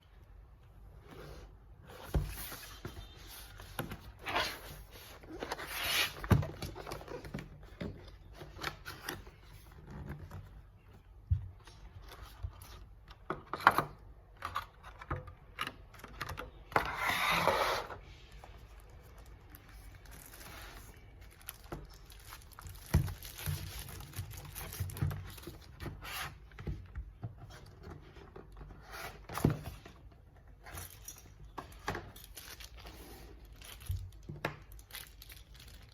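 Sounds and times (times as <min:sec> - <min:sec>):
packaging rustling and scraping: 0:01.0 - 0:10.4, 0:16.8 - 0:35.9.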